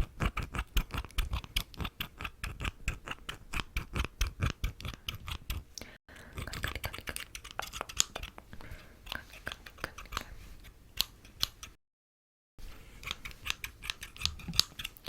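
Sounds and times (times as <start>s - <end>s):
scissors snipping: 0.0s - 5.6s, 6.2s - 8.4s, 11.0s - 11.8s, 13.0s - 15.0s.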